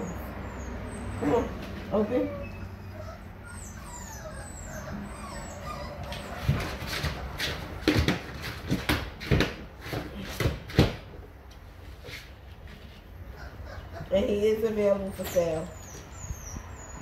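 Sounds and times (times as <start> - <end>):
puppy whimpering: 0.0 - 7.1, 13.2 - 17.0.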